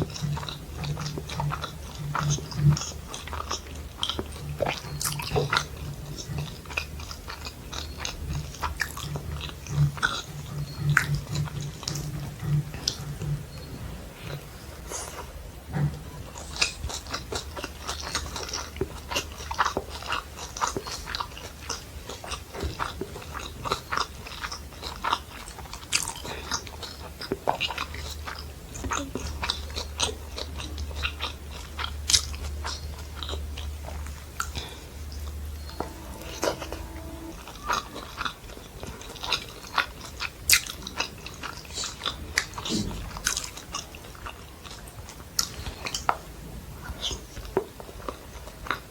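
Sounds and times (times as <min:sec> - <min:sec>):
low steady hum: 0:00.0 - 0:38.3.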